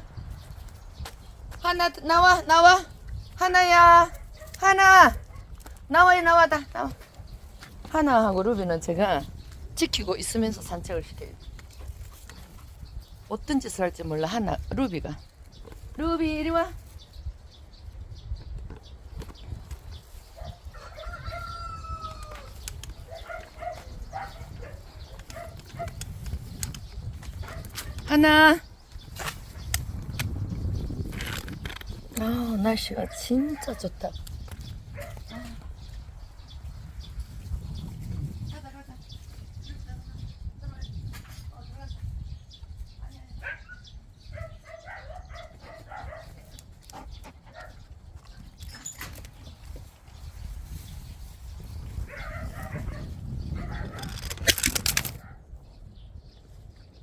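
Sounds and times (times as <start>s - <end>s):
wind rumbling on microphone: 0.0s - 57.0s
rooster crowing: 20.8s - 22.5s.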